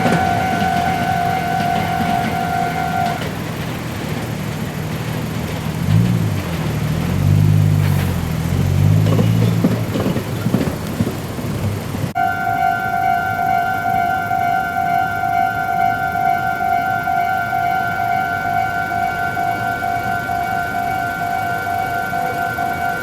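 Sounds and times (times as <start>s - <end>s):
level crossing alarm ringing: 0.0s - 4.3s, 8.8s - 23.0s
vehicle engine hum: 0.0s - 23.0s
knocks: 8.9s - 12.2s.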